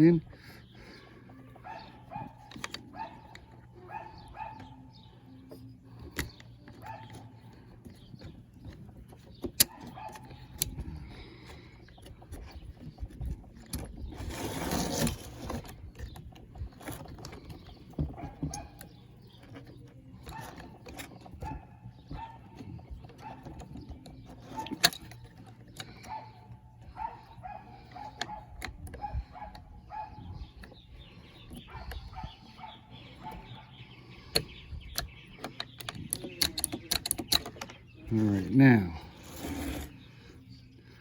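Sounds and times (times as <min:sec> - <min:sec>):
small parts clicking and clattering: 0:23.1 - 0:26.1, 0:34.3 - 0:37.8.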